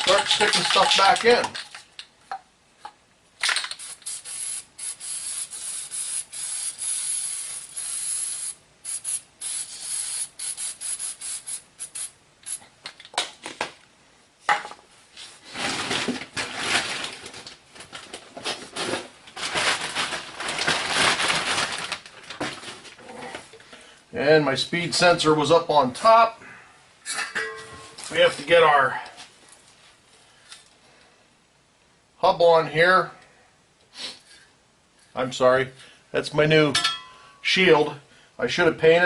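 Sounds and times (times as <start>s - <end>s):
aerosol spray hissing: 3.8s - 12.6s.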